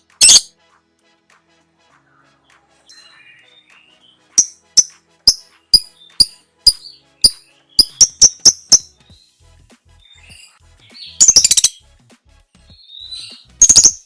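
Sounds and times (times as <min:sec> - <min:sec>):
lovebird shrill chirps: 0:00.2 - 0:00.5, 0:04.4 - 0:08.9, 0:11.0 - 0:11.8, 0:12.8 - 0:14.0.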